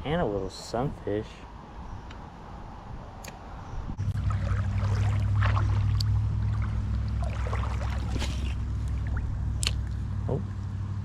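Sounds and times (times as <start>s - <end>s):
engine humming: 3.2s - 11.0s.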